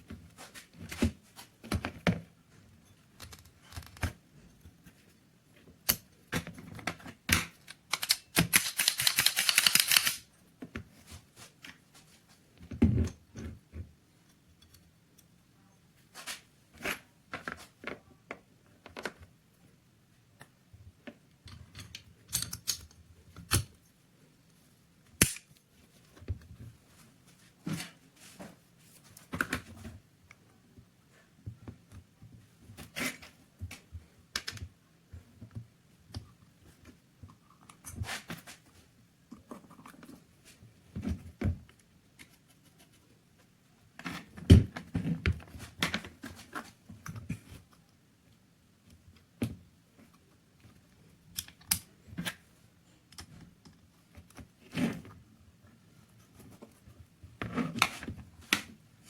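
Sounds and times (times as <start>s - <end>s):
metal pistol parts clicking: 7.6s - 10.3s, 21.7s - 23.7s, 25.2s - 25.6s.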